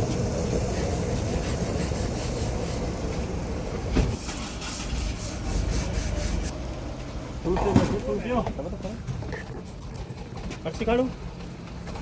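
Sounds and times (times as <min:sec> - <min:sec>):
thump: 0:03.9 - 0:04.2.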